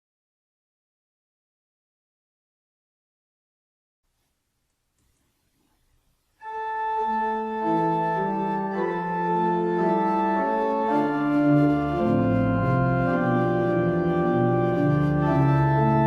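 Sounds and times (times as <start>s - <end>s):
deep organ bass notes: 6.4s - 16.0s
organ chords: 6.4s - 16.0s.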